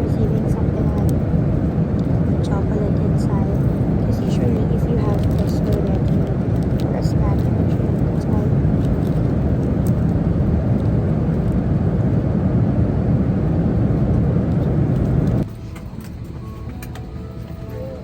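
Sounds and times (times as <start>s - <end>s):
airliner cabin rumble: 0.0s - 18.0s.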